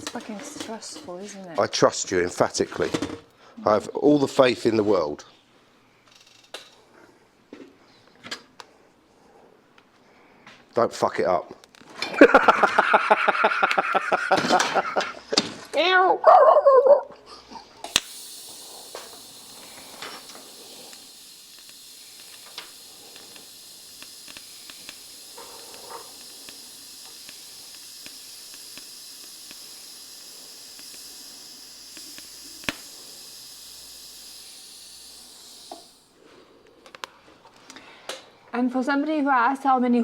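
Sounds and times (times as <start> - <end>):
welding arc hissing and whining: 0.0 - 3.0, 6.1 - 6.8, 10.8 - 16.5, 17.3 - 37.2
faint ticks: 18.0 - 34.4.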